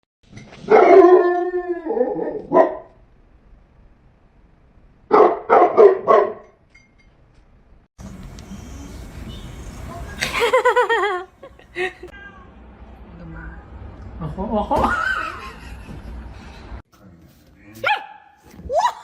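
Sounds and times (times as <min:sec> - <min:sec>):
dog barking: 0:00.7 - 0:01.2, 0:02.5 - 0:02.9, 0:05.1 - 0:06.5, 0:17.8 - 0:18.3.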